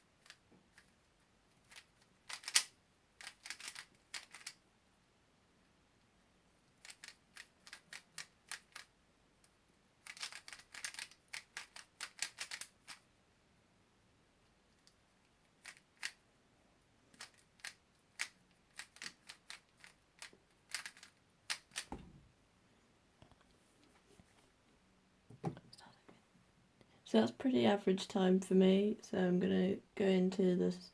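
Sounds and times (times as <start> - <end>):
puzzle cube layers clicking: 1.6 - 4.6, 6.8 - 8.9, 10.0 - 13.0, 15.6 - 16.2, 17.1 - 21.9
dull thump: 21.9 - 22.3.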